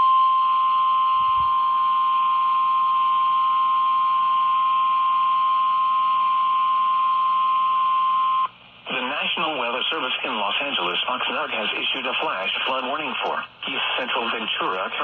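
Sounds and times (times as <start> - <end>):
steady high alarm tone: 0.0 - 8.5
radio hiss: 8.8 - 15.0.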